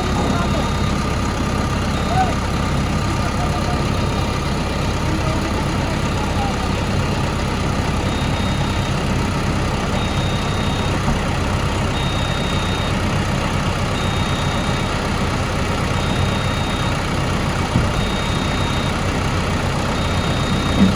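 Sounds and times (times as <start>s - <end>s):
high warning beep: 0.0s - 5.1s, 7.9s - 11.0s, 11.9s - 13.0s, 13.9s - 15.1s, 16.0s - 17.0s, 17.9s - 19.0s, 19.9s - 20.9s
diesel engine idling: 0.0s - 20.9s.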